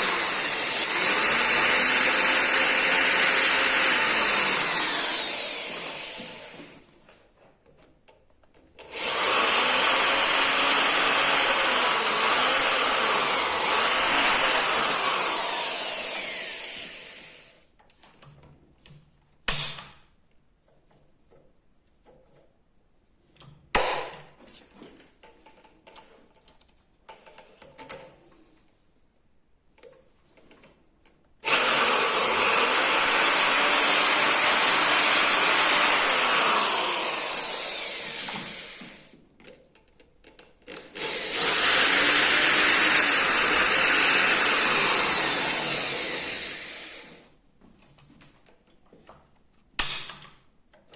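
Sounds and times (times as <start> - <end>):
power grinder whining: 0.0 - 6.8, 8.9 - 17.6, 31.4 - 39.1, 40.7 - 47.2
clicks and knocks of handling: 23.3 - 28.4, 39.1 - 40.9, 47.6 - 50.9.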